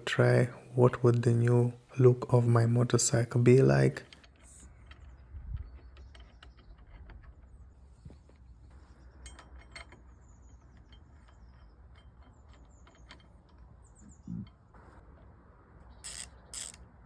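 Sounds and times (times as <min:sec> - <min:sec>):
metallic clicks and clinks: 0:09.1 - 0:14.7.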